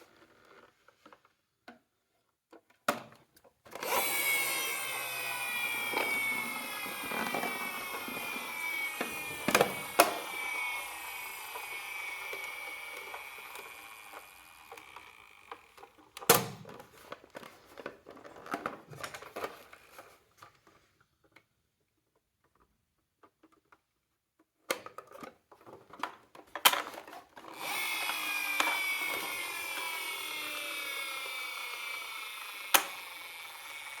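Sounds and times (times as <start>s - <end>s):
toy sirens wailing: 3.8s - 15.6s, 27.5s - 34.0s.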